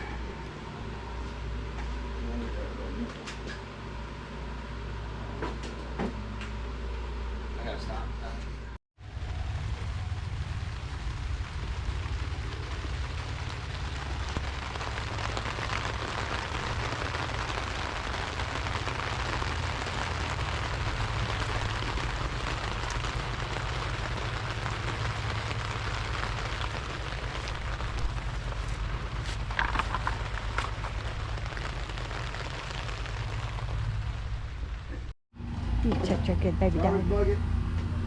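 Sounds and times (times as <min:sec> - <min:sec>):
low rumble: 0:08.6 - 0:38.0
steady rain falling: 0:09.0 - 0:35.1.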